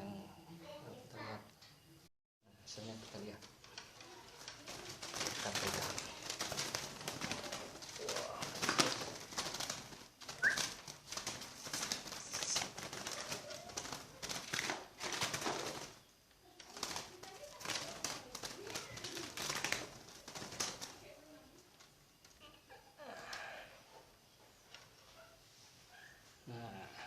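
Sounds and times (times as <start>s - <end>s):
clicks and rustles of handling: 3.0s - 22.5s
birds calling: 4.8s - 16.2s.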